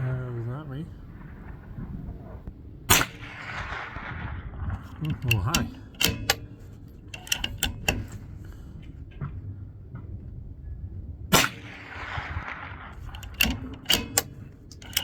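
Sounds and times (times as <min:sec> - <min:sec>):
rifle shot: 0:02.9 - 0:08.4, 0:11.3 - 0:15.0
rifle bolt clicks: 0:04.8 - 0:08.6, 0:13.0 - 0:15.0.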